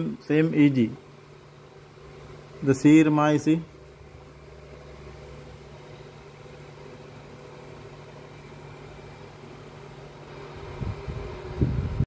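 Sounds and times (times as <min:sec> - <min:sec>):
motor humming: 0:00.0 - 0:12.0.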